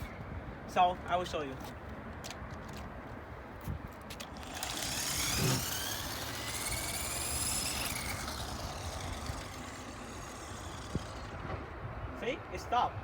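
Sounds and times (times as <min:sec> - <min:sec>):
toy electric motor whining: 0:04.2 - 0:11.7.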